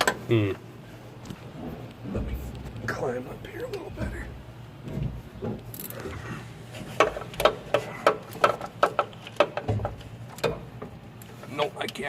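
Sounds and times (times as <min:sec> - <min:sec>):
boots and hands knocking on metal: 0:03.7 - 0:05.8, 0:06.8 - 0:11.0.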